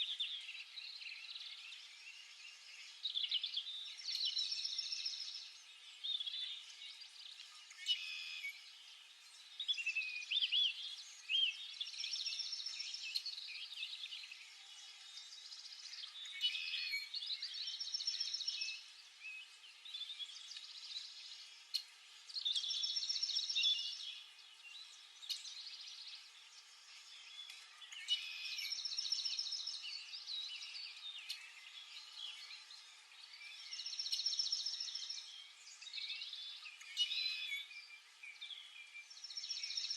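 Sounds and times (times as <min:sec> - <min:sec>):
bird chirps and calls: 0:15.0 - 0:39.9.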